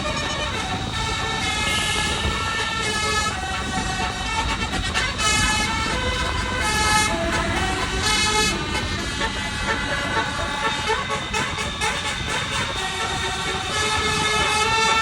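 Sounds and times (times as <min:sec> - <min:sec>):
low engine rumble: 0:00.0 - 0:15.0
musical air horn playing a tune: 0:00.0 - 0:15.0.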